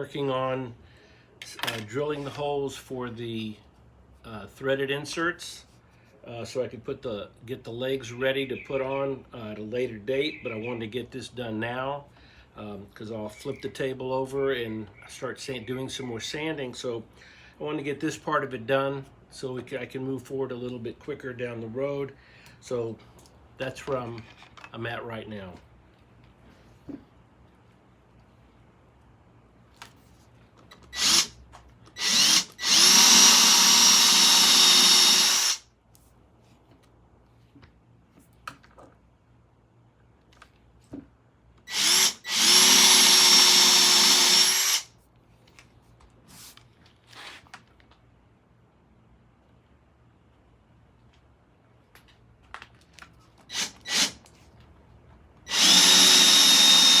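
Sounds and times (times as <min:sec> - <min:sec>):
power drill boring holes: 0:30.9 - 0:31.3, 0:31.9 - 0:35.6, 0:41.7 - 0:44.9, 0:53.5 - 0:54.2, 0:55.5 - 0:57.0.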